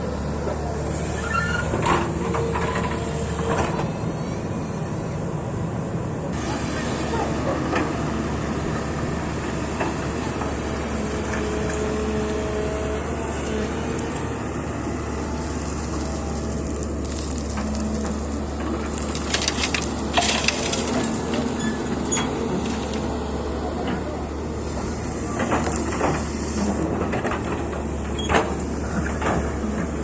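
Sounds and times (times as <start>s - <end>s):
excavator engine droning: 0.0s - 30.0s.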